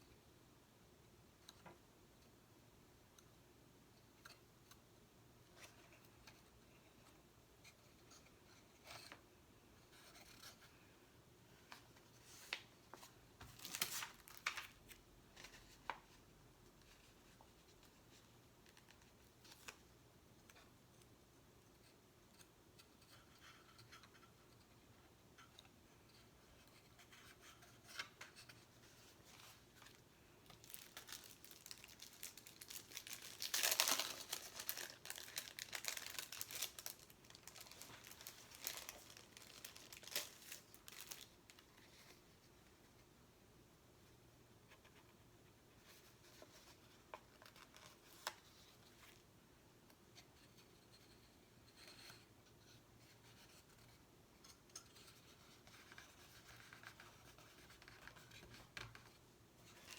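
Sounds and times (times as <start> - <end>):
stickers crinkling and tearing: 30.5 - 41.4.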